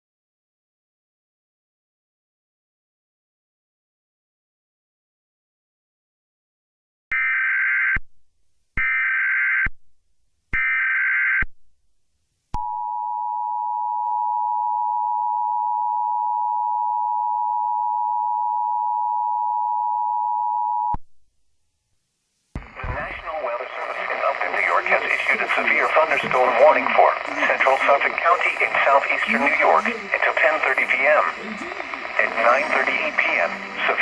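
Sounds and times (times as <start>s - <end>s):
steady attention tone: 22.6s - 34.0s.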